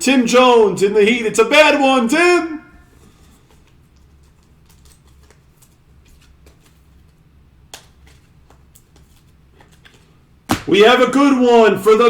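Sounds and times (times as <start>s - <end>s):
trading cards clicking and tapping: 7.7s - 10.9s.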